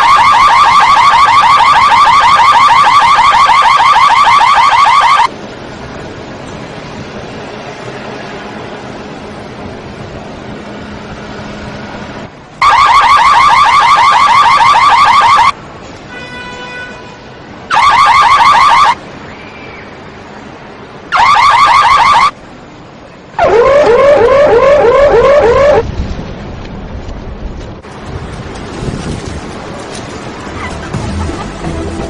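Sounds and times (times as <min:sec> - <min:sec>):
car alarm warbling chirps: 0:00.0 - 0:05.3, 0:12.6 - 0:15.6, 0:17.7 - 0:19.0, 0:21.1 - 0:22.4, 0:23.4 - 0:25.8.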